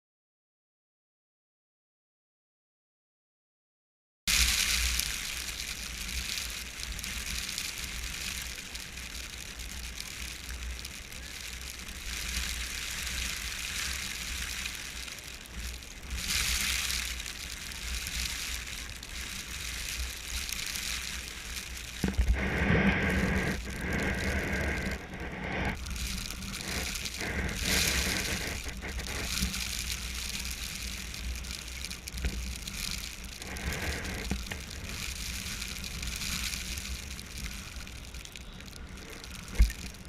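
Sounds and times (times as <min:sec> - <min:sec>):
blowing snow hiss: 0:04.3 - 0:40.0
wind buffeting microphone: 0:21.9 - 0:30.3.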